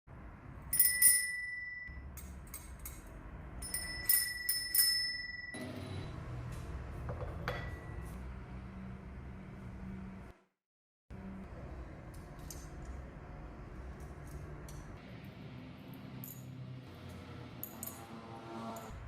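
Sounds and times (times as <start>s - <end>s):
bicycle bell ringing: 0.7s - 2.0s, 3.6s - 5.6s.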